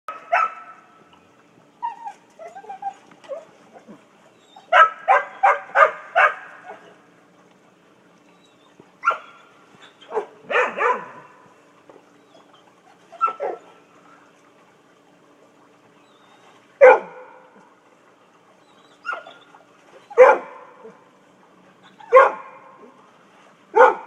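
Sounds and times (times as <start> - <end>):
dogs barking: 0.1 - 0.8, 4.6 - 7.0, 9.0 - 9.4, 10.0 - 11.4, 13.2 - 13.7, 16.8 - 17.4, 20.1 - 20.9, 21.9 - 22.7, 23.7 - 24.0.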